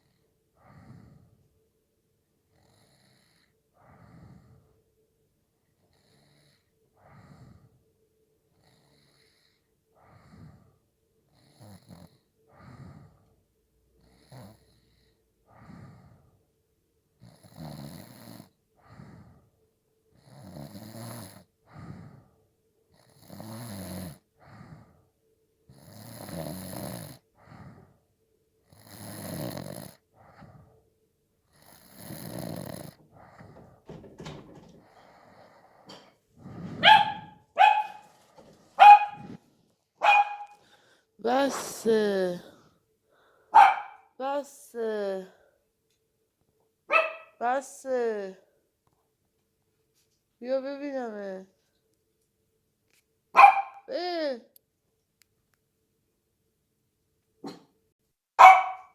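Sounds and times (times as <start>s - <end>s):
person snoring: 25.7s - 27.8s, 28.7s - 30.5s, 31.5s - 33.6s, 34.8s - 36.9s
dog barks: 36.8s - 39.4s, 40.0s - 40.6s, 43.5s - 44.1s, 46.9s - 47.4s, 53.4s - 53.9s, 57.4s - 57.8s, 58.4s - 58.9s.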